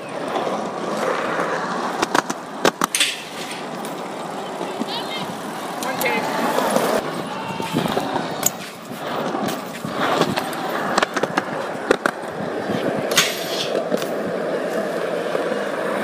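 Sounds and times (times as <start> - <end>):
bike tyres rolling on hard surface: 0.0 - 16.0.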